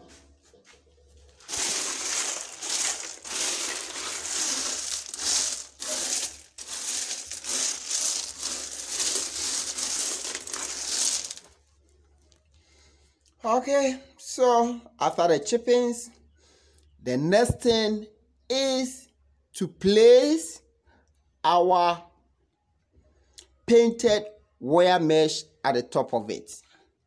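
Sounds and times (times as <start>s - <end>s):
stone chippings pouring: 1.4s - 11.6s.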